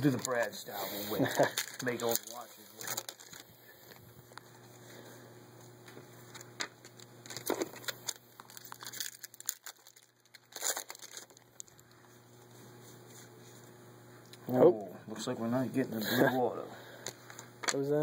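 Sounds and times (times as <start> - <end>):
pack wrapper crinkling: 1.2 - 3.5, 6.3 - 12.0.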